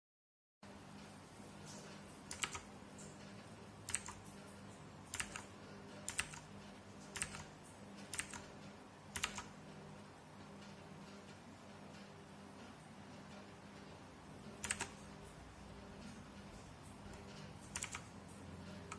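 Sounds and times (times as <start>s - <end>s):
mechanical keyboard key clicks: 17.7s - 18.0s.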